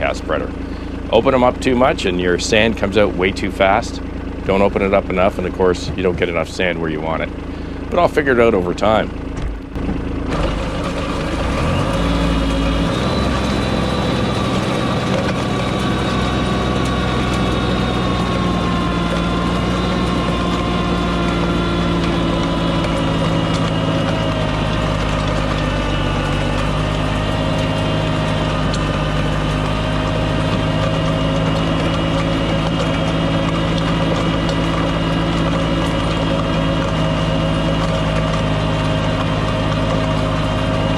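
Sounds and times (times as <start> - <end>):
tractor diesel engine running: 0.0 - 40.9.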